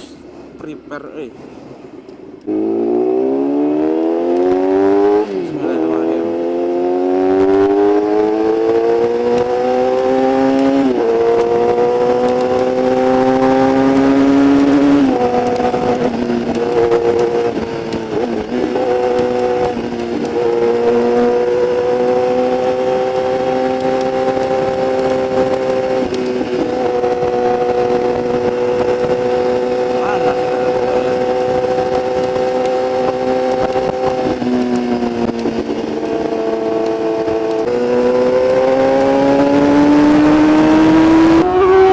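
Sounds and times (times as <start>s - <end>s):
motorcycle engine accelerating: 2.4s - 41.9s.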